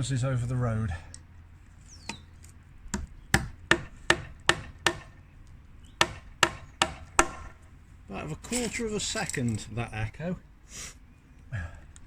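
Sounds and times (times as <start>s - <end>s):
hammer striking nail: 2.9s - 5.2s, 6.0s - 7.6s.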